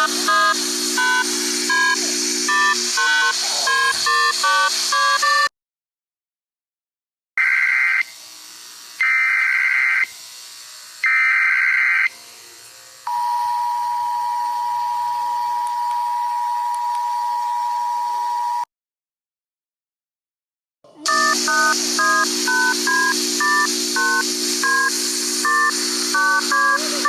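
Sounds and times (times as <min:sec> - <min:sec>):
data header tones: 0:00.0 - 0:05.5, 0:21.1 - 0:27.0
two-tone attention signal: 0:00.0 - 0:05.5, 0:21.0 - 0:27.0.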